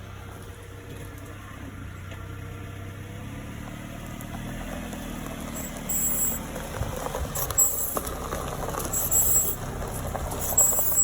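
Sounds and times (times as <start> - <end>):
car engine running while rolling: 0.0 - 11.0
high-pitched squeal: 5.6 - 6.4.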